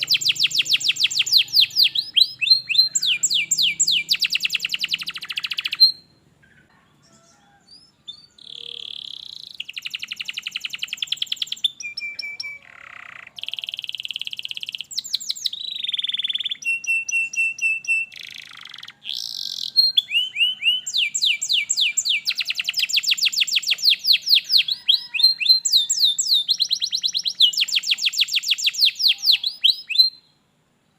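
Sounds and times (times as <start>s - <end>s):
canary singing: 0.0s - 30.4s.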